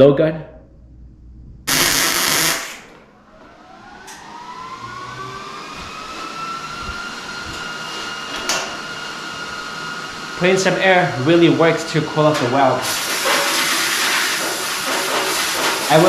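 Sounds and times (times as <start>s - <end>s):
rising whine: 0.8s - 11.4s
air blowgun blast and hiss: 1.7s - 2.9s.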